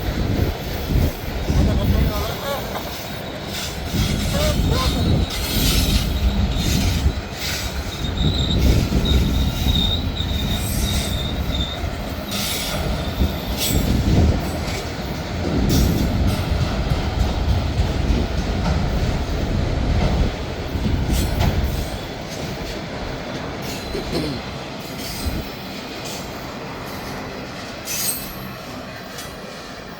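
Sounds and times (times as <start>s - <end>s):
freight train rolling rumble: 0.0s - 29.9s
train cars clanking: 0.0s - 29.9s
high wheel squeal: 2.1s - 14.0s, 27.8s - 29.6s.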